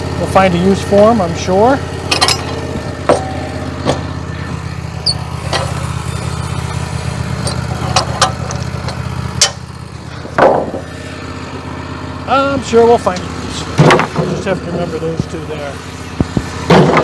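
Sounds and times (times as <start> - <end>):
small engine idling: 0.0 - 17.0
sharp knocks: 7.5 - 10.9, 16.2 - 17.0.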